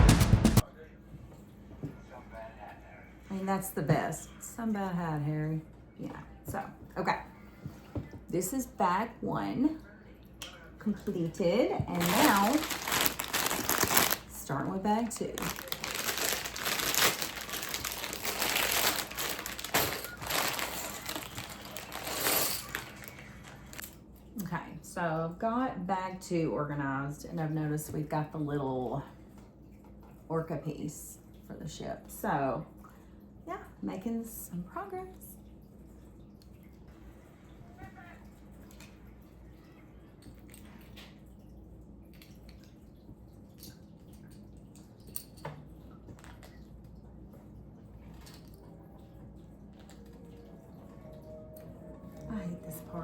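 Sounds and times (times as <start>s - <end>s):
low steady hum: 0.6s - 53.0s
plastic bag crinkling: 11.9s - 23.9s.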